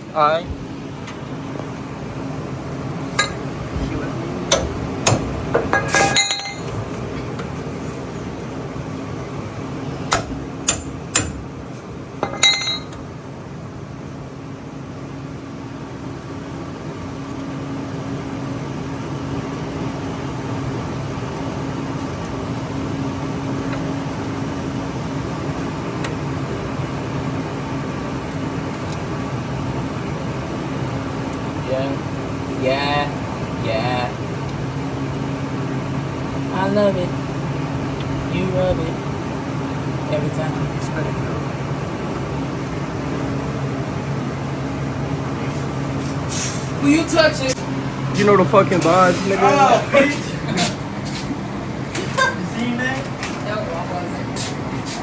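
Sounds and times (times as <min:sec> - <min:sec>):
steady low hum: 0:00.0 - 0:55.0
metal parts clinking and knocking: 0:05.7 - 0:06.8, 0:12.2 - 0:13.0.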